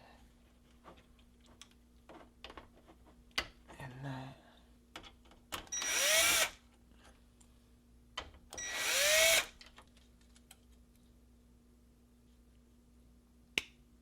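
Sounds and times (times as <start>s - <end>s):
power drill motor whirring: 5.8s - 6.6s, 8.6s - 9.6s.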